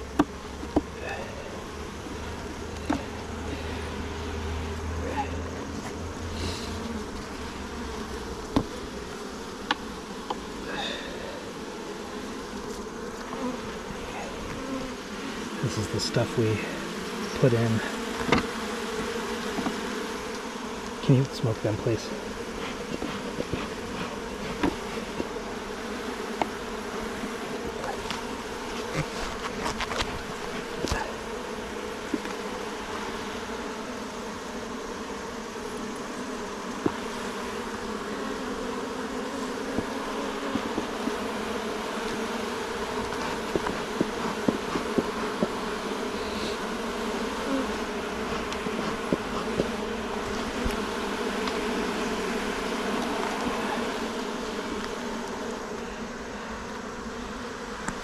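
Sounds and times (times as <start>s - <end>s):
honeybees buzzing: 0.0s - 58.0s.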